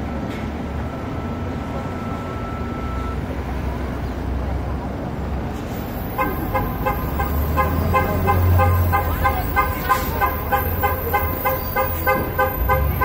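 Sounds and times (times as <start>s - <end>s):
bus engine humming: 0.0s - 13.0s
rapid horn-like beeps: 5.9s - 13.0s.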